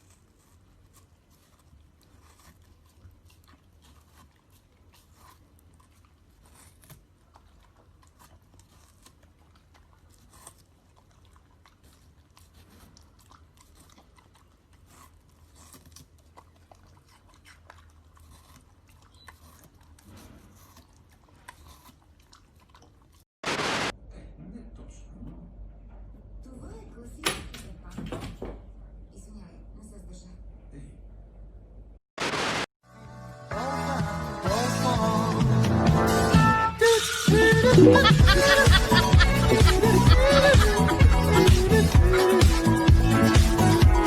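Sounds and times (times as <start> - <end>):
crunchy chewing: 0.0 - 23.4, 37.4 - 44.0.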